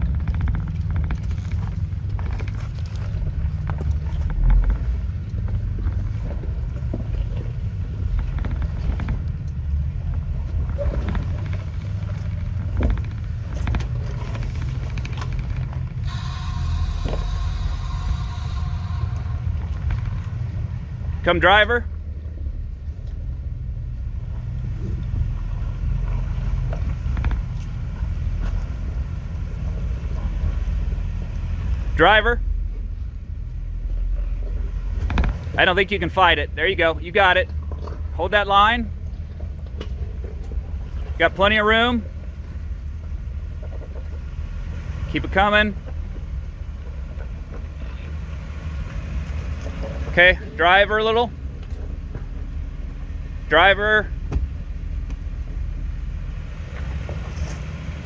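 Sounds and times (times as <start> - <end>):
engine rumbling at low revs: 0.0 - 58.0
tires crunching on rock: 0.0 - 58.0
heavy thump: 16.1 - 20.6, 54.1 - 55.2.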